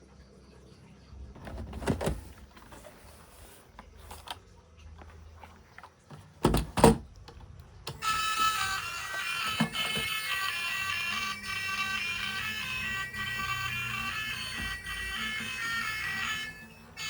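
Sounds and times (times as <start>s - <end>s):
knocks and scrapes of handling: 1.4s - 4.4s.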